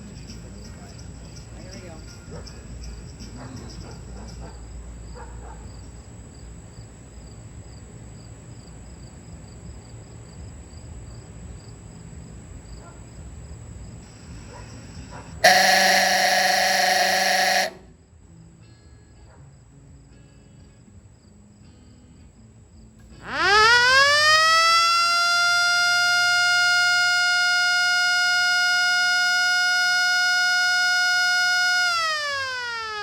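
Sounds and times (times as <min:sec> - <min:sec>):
electric oooga horn blast: 0:15.4 - 0:17.8.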